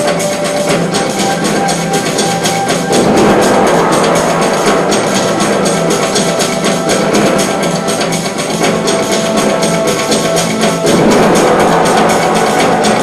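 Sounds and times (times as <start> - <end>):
fast percussive beat: 0.0 - 13.0
sustained low tones: 2.6 - 9.6, 10.9 - 13.0.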